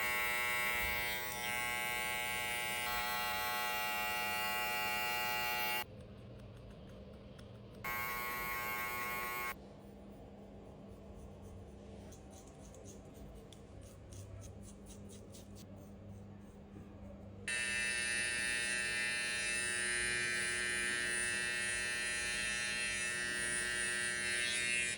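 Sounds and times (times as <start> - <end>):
electric hair clipper buzzing: 0.0 - 5.9, 7.9 - 9.6, 17.5 - 24.9.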